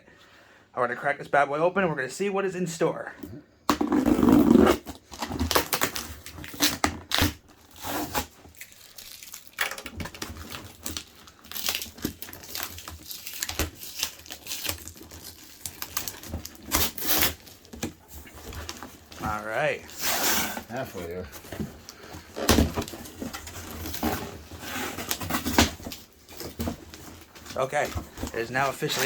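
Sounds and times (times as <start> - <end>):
packaging tearing and crinkling: 3.8 - 29.0.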